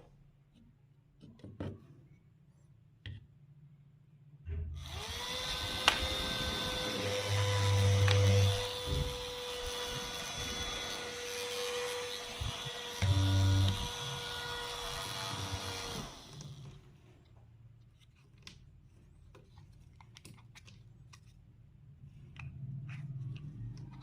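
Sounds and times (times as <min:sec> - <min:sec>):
mini fan whirring: 0:04.8 - 0:16.9.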